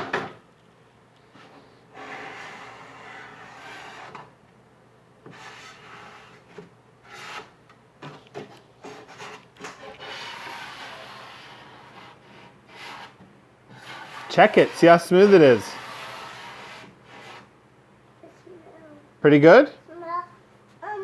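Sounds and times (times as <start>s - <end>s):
sandpaper rubbing on wood: 9.1s - 17.5s.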